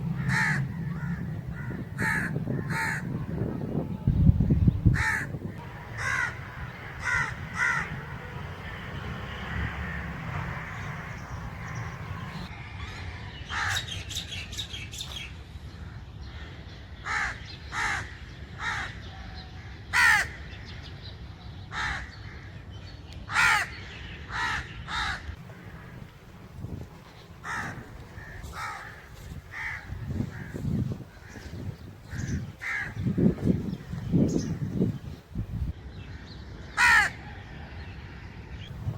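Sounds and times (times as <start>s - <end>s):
crows cawing: 0.0s - 3.4s, 4.9s - 13.8s, 16.4s - 19.0s, 19.9s - 20.4s, 21.7s - 22.5s, 23.3s - 34.9s, 36.8s - 37.2s
low background rumble: 0.0s - 9.0s.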